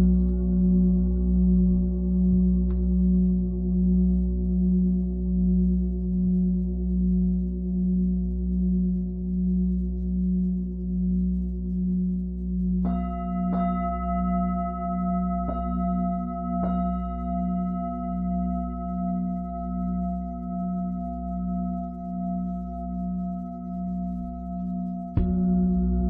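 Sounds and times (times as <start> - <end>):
singing bowl ringing: 12.9 - 26.0
singing bowl struck: 25.0 - 26.0.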